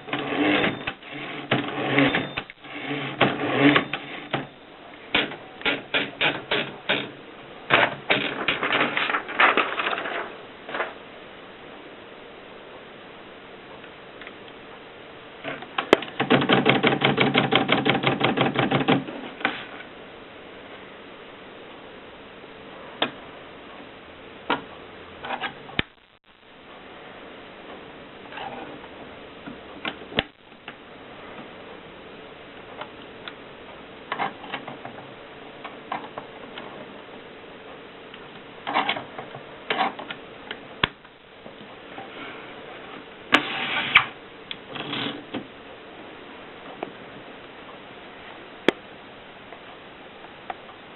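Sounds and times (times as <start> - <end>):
typewriter hum: 16.0 - 19.1
typewriter keystrokes: 16.2 - 19.0.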